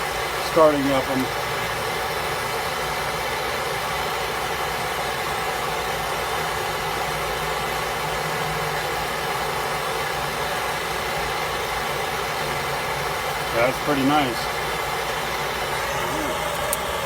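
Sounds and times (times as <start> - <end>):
torch flame hissing: 8.8 - 17.0.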